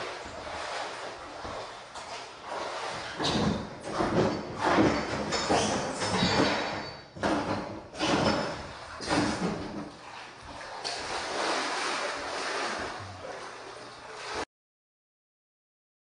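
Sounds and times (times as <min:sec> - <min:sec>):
wading through shallow water: 0:00.0 - 0:05.9, 0:07.9 - 0:14.5.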